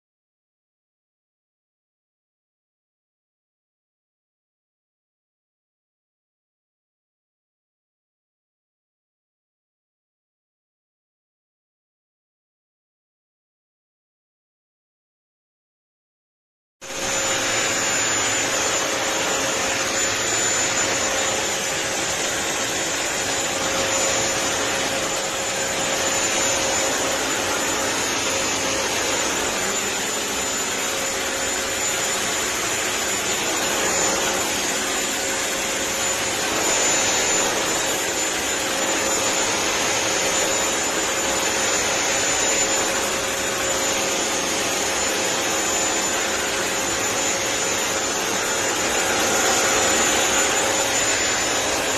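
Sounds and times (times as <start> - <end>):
floor cleaner suction rushing: 16.8 - 51.9
high-pitched whine: 16.8 - 51.9.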